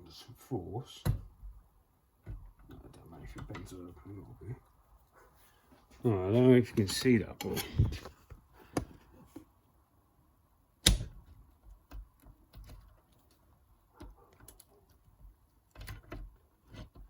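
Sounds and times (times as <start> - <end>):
light clicks and taps: 2.2 - 5.2.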